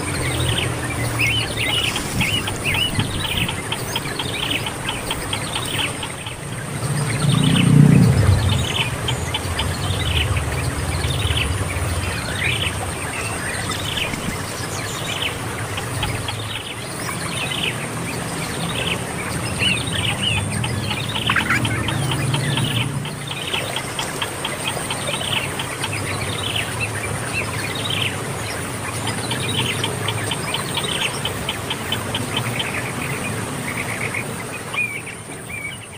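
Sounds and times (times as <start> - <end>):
birds chirping and trilling: 0.0 - 35.9
low rumble: 6.4 - 13.0.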